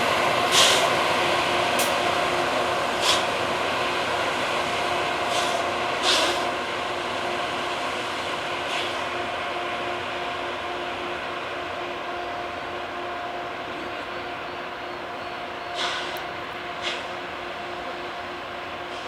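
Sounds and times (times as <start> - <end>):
rail grinding train drone: 0.0 - 19.0
short sharp hisses: 15.8 - 16.2.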